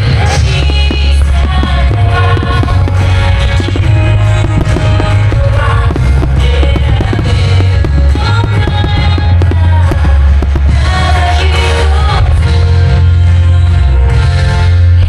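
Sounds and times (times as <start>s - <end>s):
fireworks popping and crackling: 0.0s - 12.6s
person singing: 0.0s - 14.0s
music with heavy bass: 0.0s - 15.0s.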